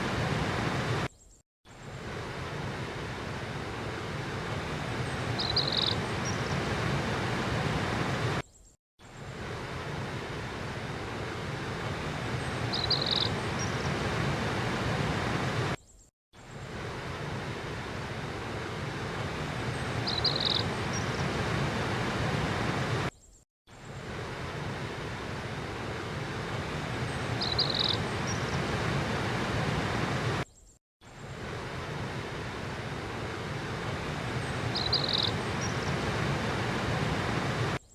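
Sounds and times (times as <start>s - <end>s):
flowing river water: 0.0s - 1.1s, 1.7s - 8.4s, 9.0s - 15.8s, 16.4s - 23.1s, 23.8s - 30.4s, 31.1s - 37.8s
high bird chirp: 5.4s - 6.4s, 12.7s - 13.7s, 20.1s - 21.0s, 27.4s - 28.4s, 34.8s - 35.8s.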